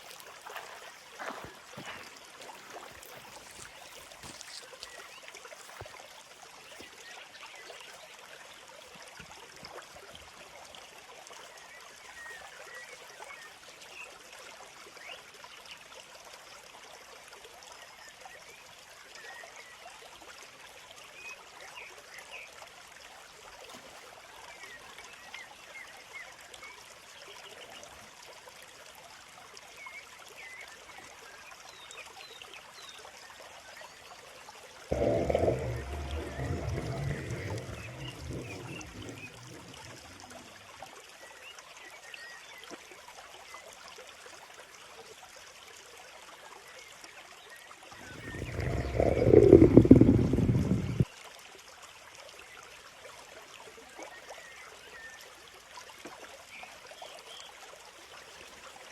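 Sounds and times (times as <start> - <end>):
stream babbling: 0.0 - 9.0, 34.9 - 41.3, 48.0 - 51.1.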